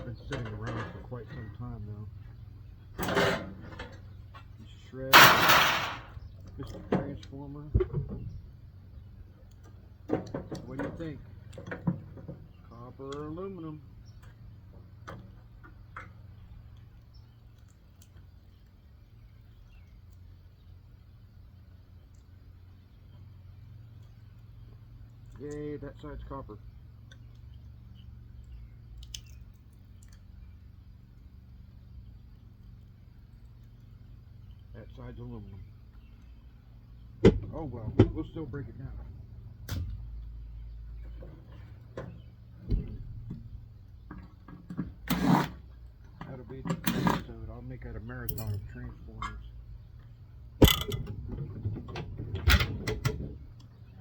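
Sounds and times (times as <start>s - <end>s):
steady low hum: 0.0s - 54.0s
metal parts knocking and clanking: 5.1s - 7.2s, 50.6s - 53.3s
hand tools clicking and knocking: 50.6s - 52.0s.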